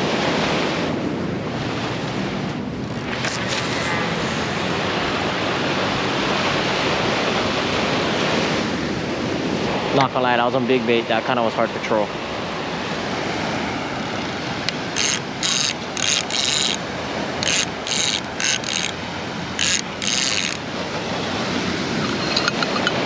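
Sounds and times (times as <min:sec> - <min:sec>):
surf: 0:00.0 - 0:23.0
fishing reel ratchet clicking: 0:14.0 - 0:16.8, 0:17.4 - 0:19.0, 0:19.6 - 0:20.7.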